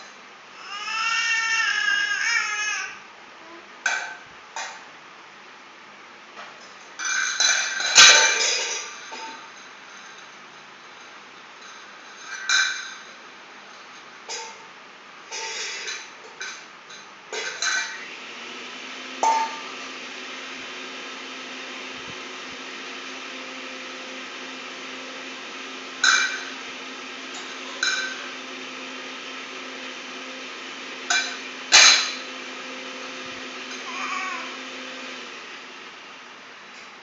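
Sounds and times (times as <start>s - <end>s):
metal objects clinking: 7.0s - 9.4s
steady low hum: 17.2s - 36.8s.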